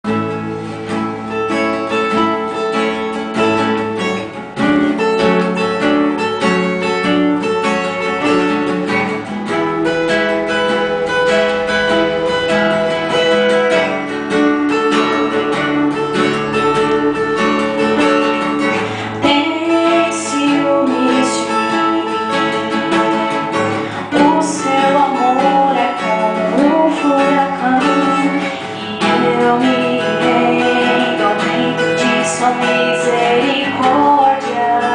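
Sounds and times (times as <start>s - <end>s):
acoustic guitar playing: 0.0s - 34.9s
woman singing: 15.6s - 34.9s.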